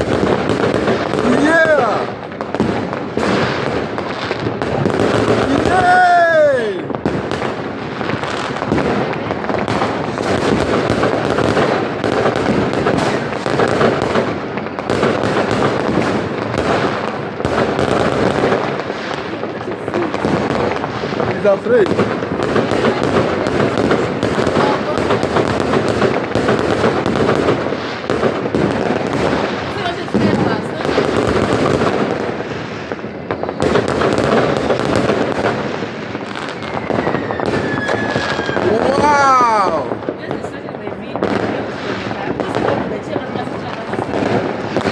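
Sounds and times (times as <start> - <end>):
fireworks and firecrackers banging: 0.0 - 44.9
falling rocket whistle: 36.3 - 39.2.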